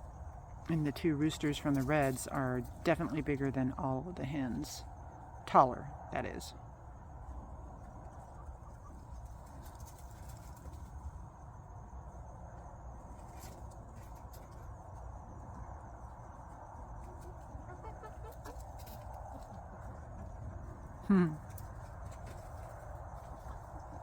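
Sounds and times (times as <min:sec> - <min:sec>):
chicks clucking softly: 0:07.8 - 0:10.7, 0:16.7 - 0:20.4.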